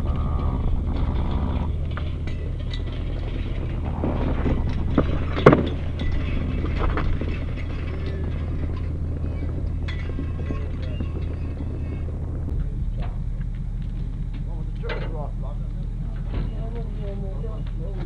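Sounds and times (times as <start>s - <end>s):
low engine hum: 0.0s - 18.0s
metallic clinks: 1.0s - 3.9s, 4.6s - 12.3s.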